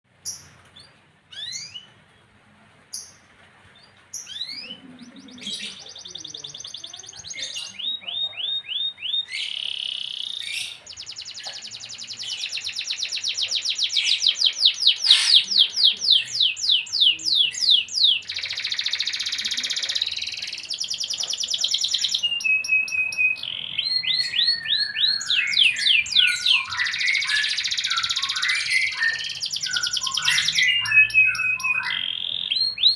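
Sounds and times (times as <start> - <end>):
canary singing trills: 0.2 - 2.0, 2.9 - 32.9
short bird chirps: 14.0 - 15.5.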